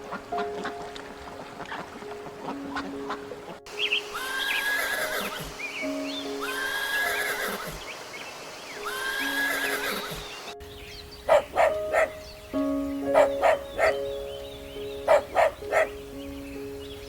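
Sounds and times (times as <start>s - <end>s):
animal calling: 2.5s - 8.0s, 8.8s - 16.1s.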